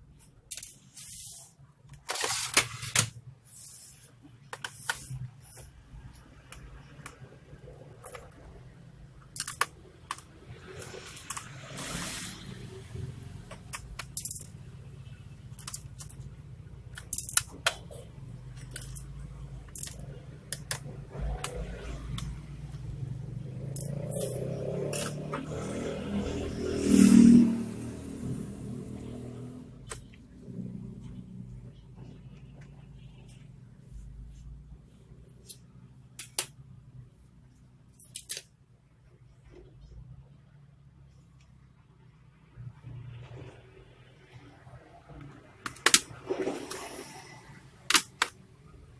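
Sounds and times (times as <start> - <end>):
screwdriver and plastic parts clicking: 9.3 - 10.3, 15.5 - 16.2, 16.9 - 17.8, 18.6 - 21.6, 38.0 - 38.5
low steady hum: 12.5 - 48.9.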